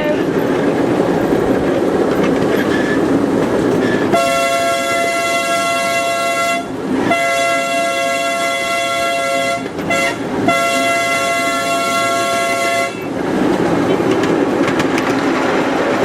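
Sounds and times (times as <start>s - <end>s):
train horn blasts: 4.1s - 13.1s.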